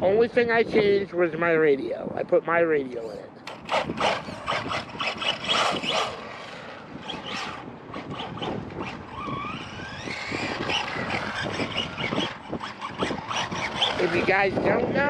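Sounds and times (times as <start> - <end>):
electric motor whining: 3.0 - 15.0.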